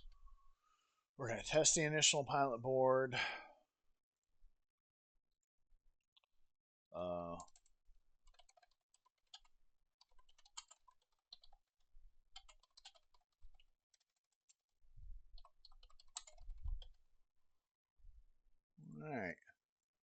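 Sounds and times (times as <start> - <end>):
computer keyboard typing: 7.2 - 11.8, 12.4 - 14.6, 15.3 - 17.0.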